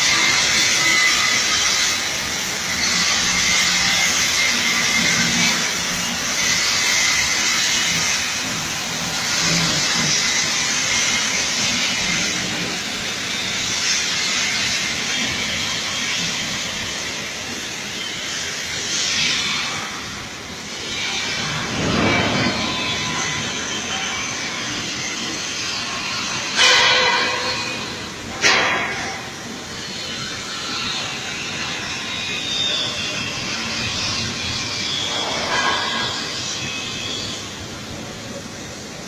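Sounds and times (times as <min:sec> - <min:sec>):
cutting torch hissing: 0:00.0 - 0:39.0.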